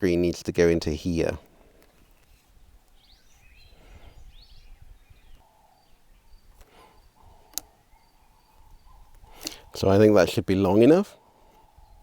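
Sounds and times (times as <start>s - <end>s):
faint bird chirps: 2.0s - 10.1s, 11.2s - 12.0s.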